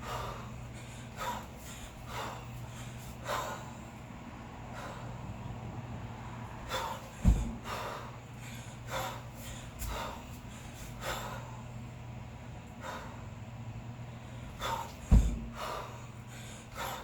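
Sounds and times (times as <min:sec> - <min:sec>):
person breathing hard: 0:00.0 - 0:05.6, 0:06.4 - 0:11.9, 0:12.6 - 0:17.0
kettlebell heavy thud: 0:07.1 - 0:07.9, 0:15.0 - 0:15.7.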